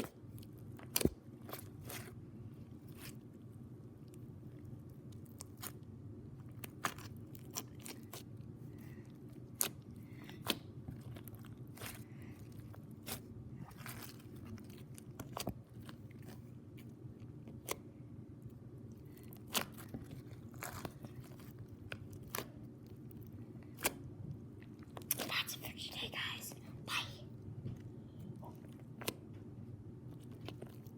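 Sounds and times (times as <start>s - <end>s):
steady low hum: 0.0s - 30.9s.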